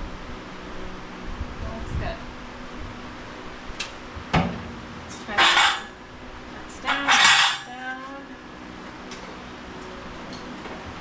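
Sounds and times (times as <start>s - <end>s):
sheet metal clattering and scraping: 4.4s - 6.0s, 6.8s - 7.7s.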